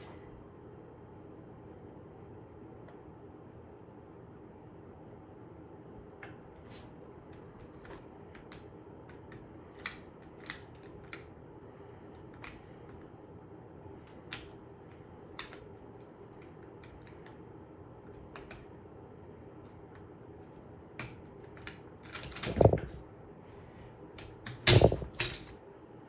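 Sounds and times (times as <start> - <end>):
faint steady hum: 0.0 - 26.0
lock picks clicking in padlock: 9.7 - 11.3, 21.0 - 22.8, 24.2 - 25.5.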